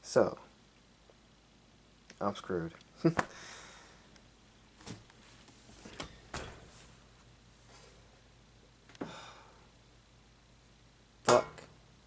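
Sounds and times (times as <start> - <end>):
vinyl records handled: 4.8 - 7.0.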